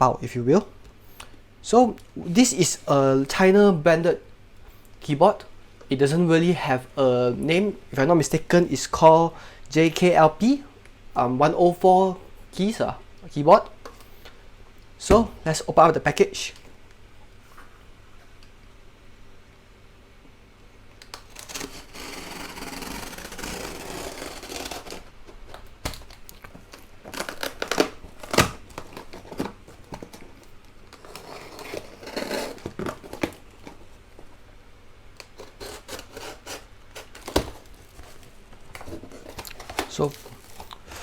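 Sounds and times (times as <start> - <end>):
packaging tearing and crinkling: 21.1 - 33.9, 35.2 - 41.0.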